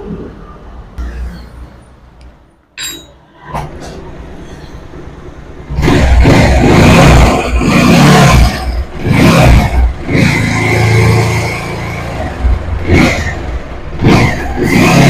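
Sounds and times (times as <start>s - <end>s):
motorcycle engine revving: 5.6s - 15.0s.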